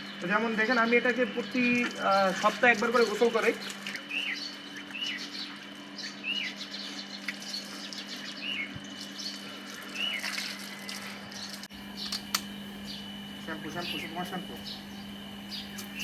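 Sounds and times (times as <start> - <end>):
steady low hum: 0.0 - 16.0
small bird chirping: 4.1 - 10.3, 11.4 - 16.0.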